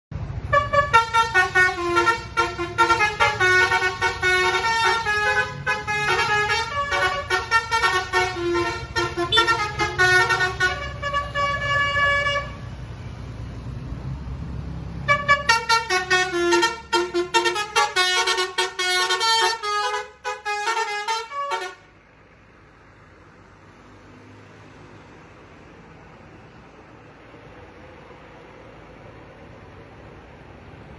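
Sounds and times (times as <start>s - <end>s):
musical air horn tune: 0.5s - 12.6s, 15.1s - 21.8s.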